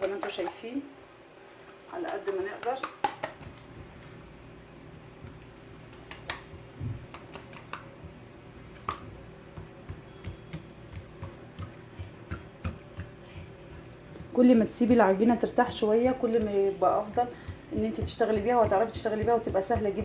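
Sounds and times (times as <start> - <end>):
sticky pats on dough: 0.0 - 0.6, 2.0 - 4.0, 5.2 - 20.0
dough squishing: 0.0 - 0.8, 1.9 - 4.0, 5.1 - 20.0.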